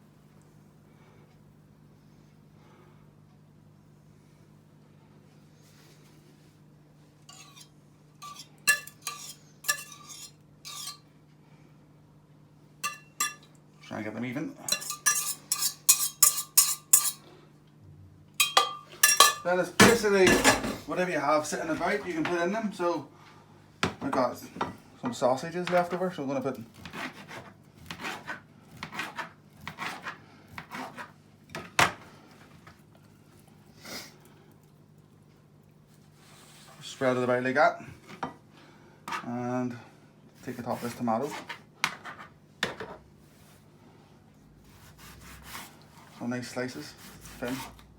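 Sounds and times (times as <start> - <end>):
knife scraping on chopping board: 7.3 - 11.0, 14.7 - 17.2, 26.7 - 31.6, 40.4 - 43.5, 44.6 - 46.2, 46.8 - 47.9
metal utensil scraping cookware: 7.3 - 11.0, 12.8 - 13.9, 14.7 - 17.2, 18.4 - 20.8.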